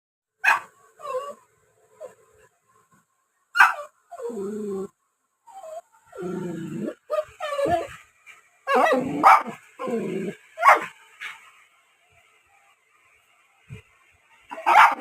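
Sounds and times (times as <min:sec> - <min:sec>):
puppy whining: 0:01.0 - 0:01.4, 0:03.7 - 0:04.9, 0:05.5 - 0:08.0, 0:08.7 - 0:10.8
puppy yipping: 0:03.6 - 0:03.9, 0:14.5 - 0:15.0.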